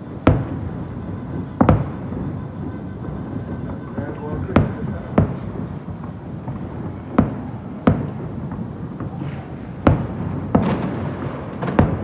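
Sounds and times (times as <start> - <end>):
low background rumble: 0.0 - 6.4
fireworks booming: 0.0 - 12.0.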